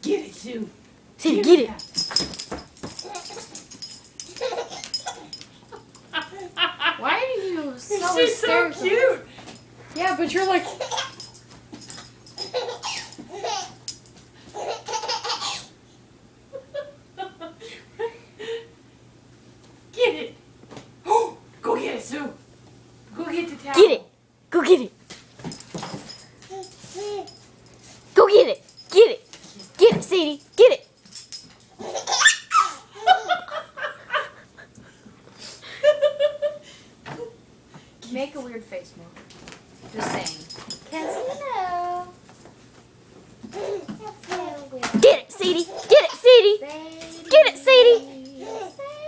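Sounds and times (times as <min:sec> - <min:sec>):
baby laughing: 0:04.4 - 0:05.3, 0:10.6 - 0:11.2, 0:12.5 - 0:13.8, 0:14.6 - 0:15.7, 0:31.8 - 0:33.5, 0:43.5 - 0:44.2, 0:48.0 - 0:49.0.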